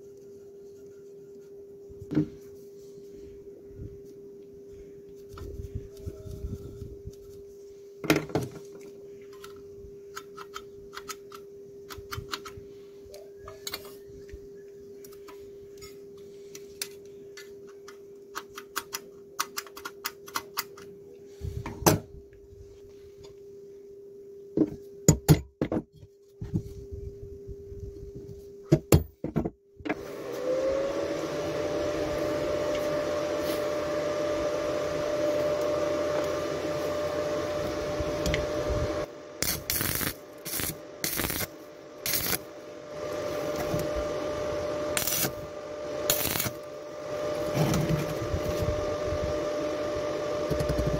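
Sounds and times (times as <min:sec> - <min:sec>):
faint steady hum: 0:00.0 - 0:30.2, 0:31.1 - 0:50.9
angle grinder whining: 0:30.0 - 0:49.2.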